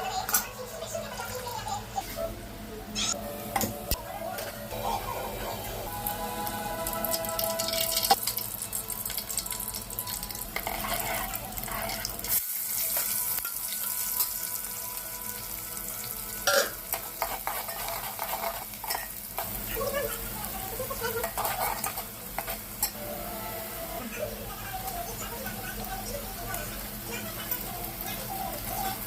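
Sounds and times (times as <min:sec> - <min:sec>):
curry sizzling in hot oil: 0:05.8 - 0:29.0
spoon scraping and clinking pan: 0:16.4 - 0:19.6, 0:21.2 - 0:23.0.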